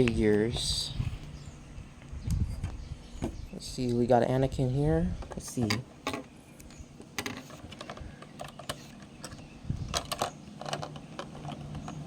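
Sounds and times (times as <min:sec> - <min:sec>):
plastic toy bricks clicking: 0:07.2 - 0:12.0.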